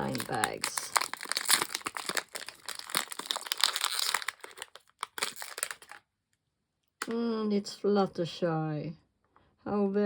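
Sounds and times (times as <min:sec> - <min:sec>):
plastic bag crinkling: 0:00.0 - 0:06.0.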